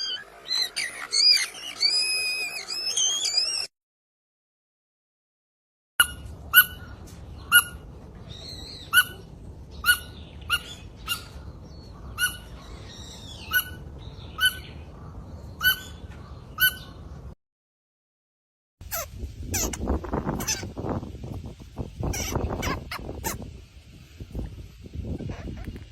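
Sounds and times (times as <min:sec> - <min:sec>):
mouse squeaking: 0:00.0 - 0:03.7, 0:20.4 - 0:20.7, 0:22.0 - 0:23.4.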